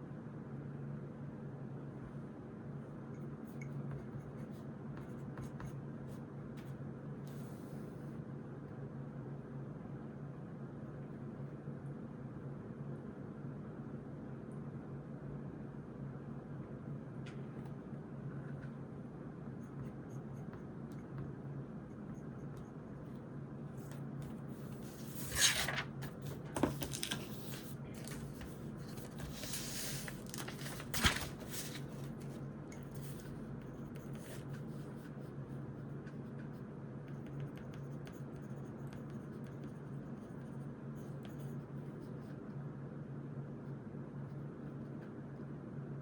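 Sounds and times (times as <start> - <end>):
steady low hum: 0.0 - 46.0
paper rustling: 23.9 - 32.4
pen scratching on paper: 32.7 - 42.3.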